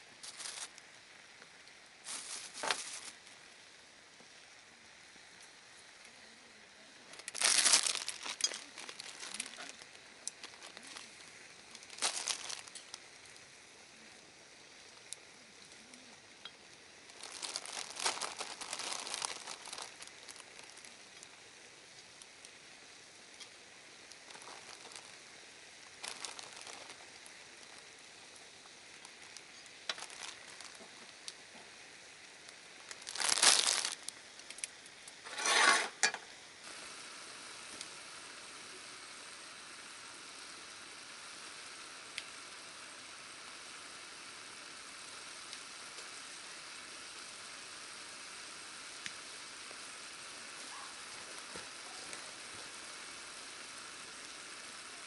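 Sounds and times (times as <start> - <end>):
steady hiss: 0.0 - 55.0
crinkling and rustling: 0.2 - 0.8, 2.0 - 3.3, 7.1 - 13.0, 17.1 - 21.4, 24.1 - 25.2, 25.8 - 31.8, 32.4 - 36.2.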